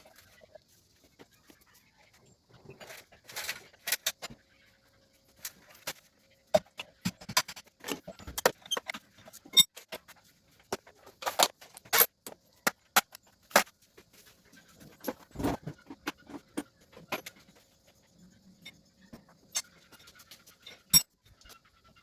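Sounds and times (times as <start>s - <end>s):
metal tools clinking and knocking: 2.7s - 4.4s, 6.6s - 13.6s, 14.8s - 17.6s, 18.6s - 21.6s.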